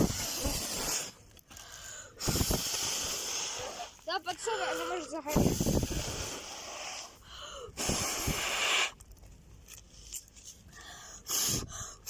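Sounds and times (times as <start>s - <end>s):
person blowing on kindling: 0.0s - 1.4s, 2.1s - 9.0s, 11.2s - 11.8s.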